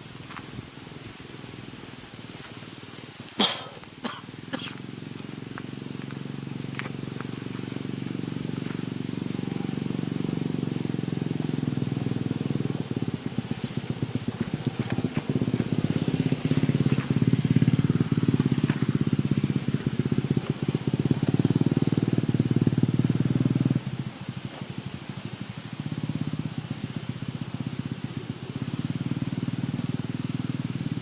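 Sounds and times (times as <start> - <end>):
train passing with pulsing rumble: 4.3 - 29.0.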